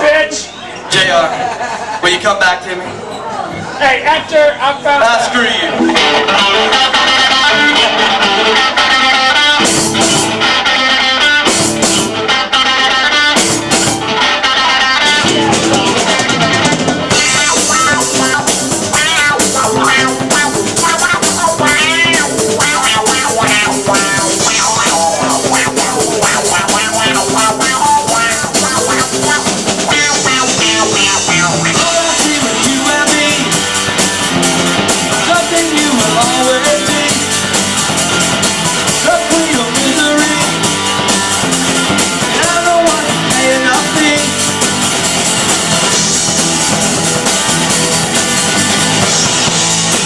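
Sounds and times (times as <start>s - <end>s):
rock band playing: 5.7s - 50.0s.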